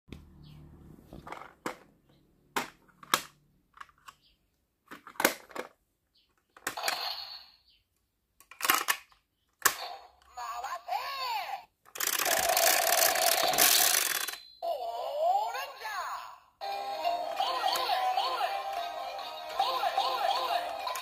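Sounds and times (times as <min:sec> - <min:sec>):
toy gun plastic clicks: 0:08.4 - 0:09.8, 0:11.9 - 0:14.4.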